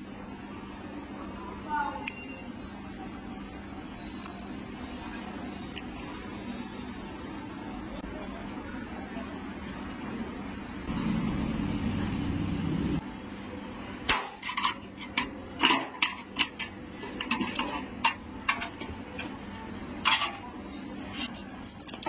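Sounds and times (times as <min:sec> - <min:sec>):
metal tools clinking: 0:21.3 - 0:22.0.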